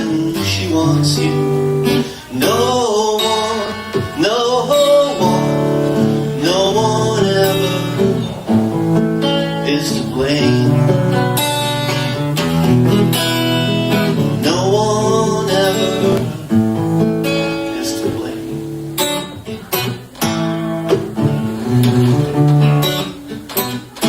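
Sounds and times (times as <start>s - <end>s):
person singing long notes: 0.0s - 8.5s, 13.6s - 16.5s
acoustic guitar strumming: 0.0s - 24.0s.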